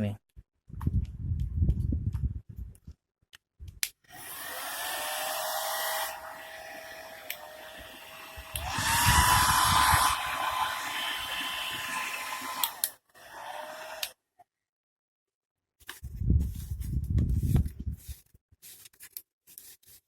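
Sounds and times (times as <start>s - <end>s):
hair dryer blowing and whining: 4.1s - 14.1s.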